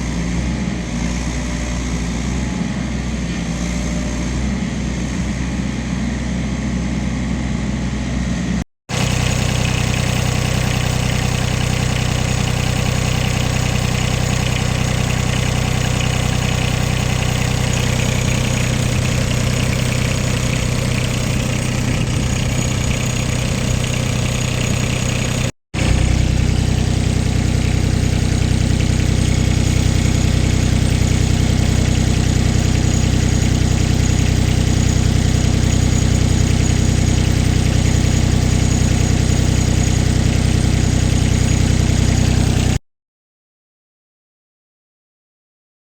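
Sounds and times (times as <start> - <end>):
diesel engine idling: 8.9 - 42.8.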